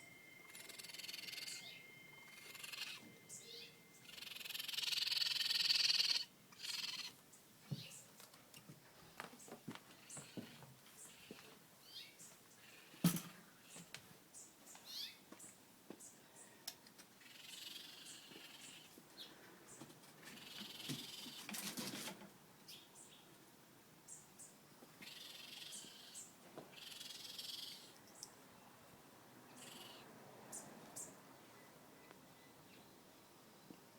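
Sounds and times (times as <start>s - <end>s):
high squeaks: 0.0s - 6.2s
baby raccoons calling: 0.0s - 8.0s, 10.0s - 13.9s, 17.2s - 19.0s, 20.2s - 21.5s, 25.0s - 28.0s, 29.5s - 30.1s.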